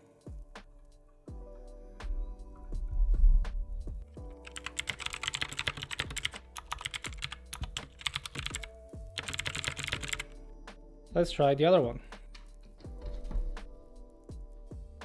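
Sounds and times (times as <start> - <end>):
mechanical keyboard typing: 4.4 - 10.3.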